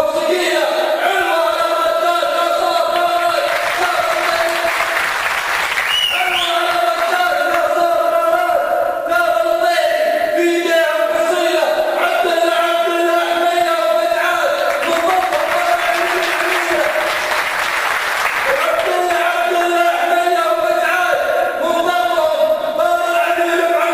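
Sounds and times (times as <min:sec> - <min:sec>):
men chanting: 0:00.0 - 0:04.7
applause-like noise: 0:03.2 - 0:07.6, 0:14.7 - 0:19.3
rising-and-falling whistle: 0:05.8 - 0:06.5.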